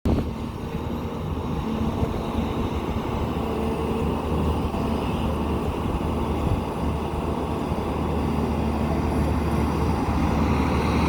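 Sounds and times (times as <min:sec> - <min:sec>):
diesel engine running: 0:00.1 - 0:11.0.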